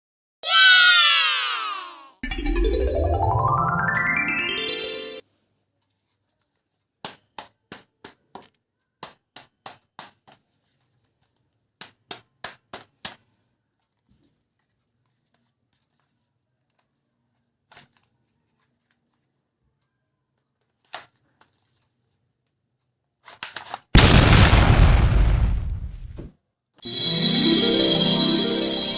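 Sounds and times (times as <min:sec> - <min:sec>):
loud burst of noise: 0:24.0 - 0:26.2.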